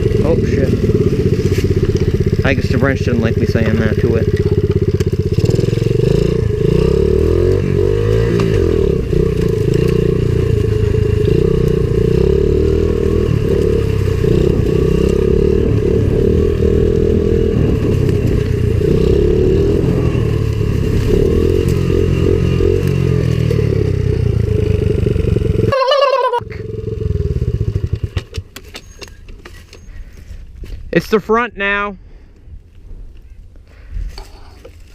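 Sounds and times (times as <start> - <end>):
small motorbike engine revving: 0.0 - 28.5.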